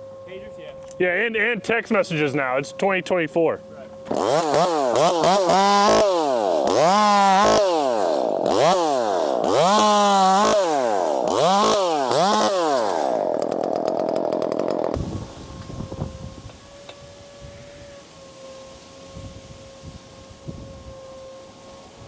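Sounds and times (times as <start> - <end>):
chainsaw revving: 4.0 - 15.5.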